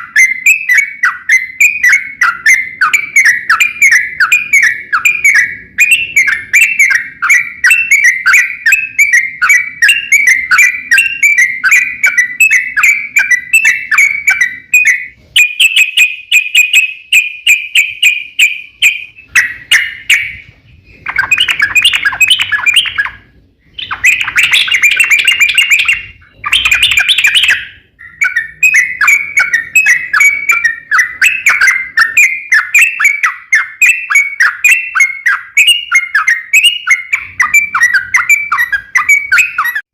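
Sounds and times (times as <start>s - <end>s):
bulbul chattering song: 0.0s - 39.8s.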